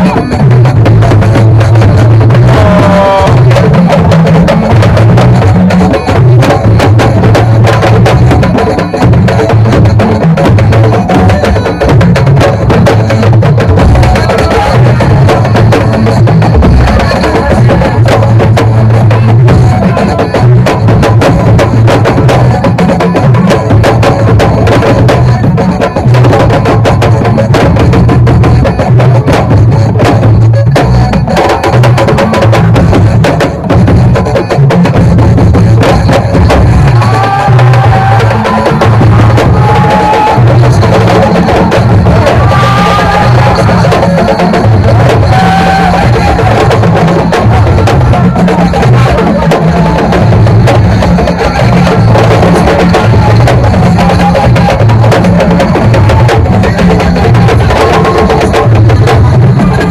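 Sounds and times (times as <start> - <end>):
drums over pulsing bass: 0.0 - 59.9.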